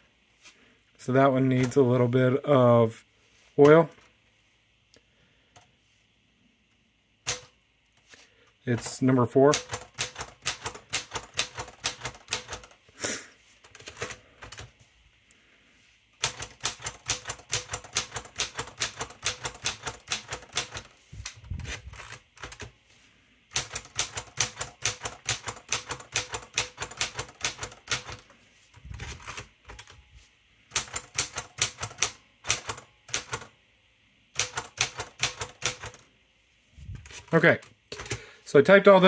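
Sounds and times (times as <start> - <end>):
manual typewriter keys clacking: 8.7 - 12.8, 13.7 - 14.7, 16.2 - 20.9, 21.7 - 22.7, 23.5 - 28.3, 30.7 - 33.5, 34.4 - 36.0.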